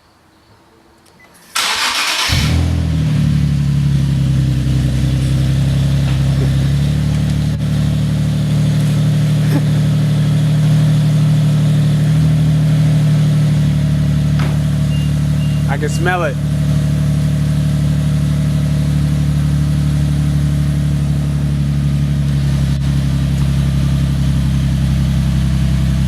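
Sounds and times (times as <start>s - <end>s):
engine cranking: 1.5s - 2.8s
car engine fast idle: 1.5s - 26.0s.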